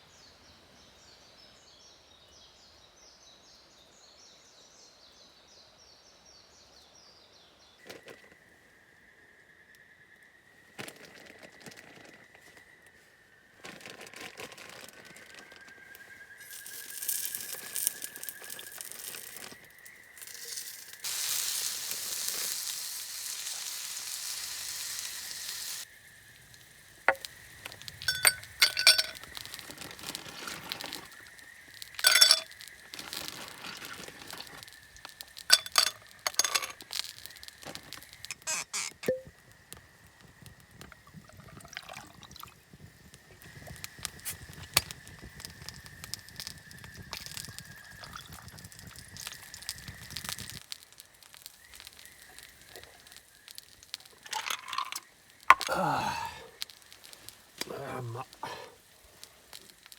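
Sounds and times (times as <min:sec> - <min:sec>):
steady hiss: 0:15.8 - 0:59.9
utensils clinking on cookware: 0:28.0 - 0:29.2, 0:32.0 - 0:34.4, 0:35.5 - 0:37.0.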